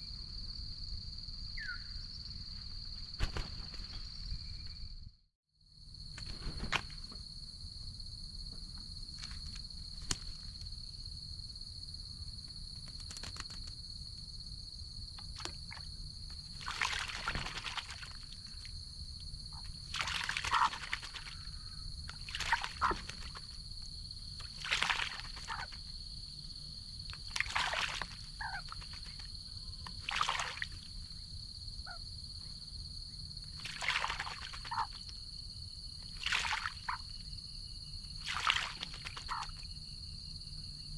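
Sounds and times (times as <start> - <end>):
bird splashing in water: 16.5 - 18.4, 19.8 - 23.6, 24.4 - 25.8, 27.1 - 30.9, 33.6 - 35.0, 36.1 - 37.0, 38.2 - 39.6.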